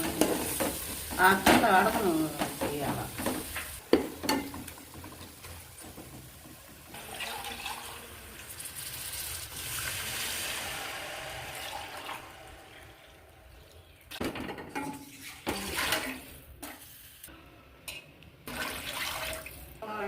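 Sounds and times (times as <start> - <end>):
water pouring into a pot: 6.9 - 13.4, 18.5 - 19.7.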